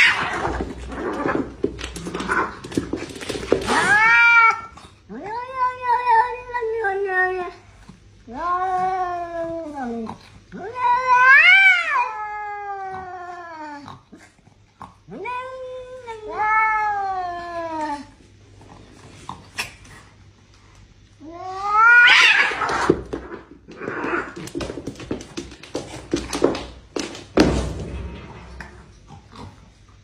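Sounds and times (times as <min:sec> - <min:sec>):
cat yowling: 0:00.0 - 0:00.5, 0:03.7 - 0:07.6, 0:10.6 - 0:13.8, 0:15.1 - 0:18.1, 0:21.2 - 0:22.9.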